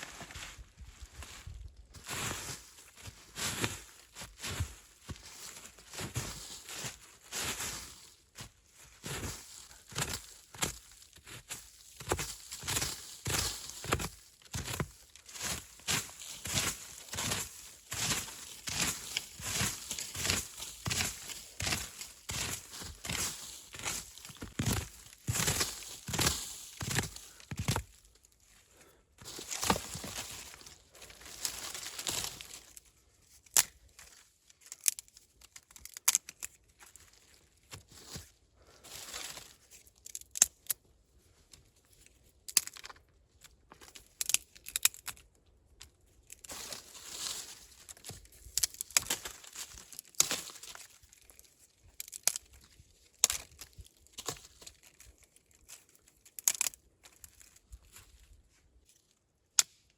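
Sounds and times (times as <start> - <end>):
dry material rustling and crinkling: 11.3 - 28.6, 29.2 - 32.9.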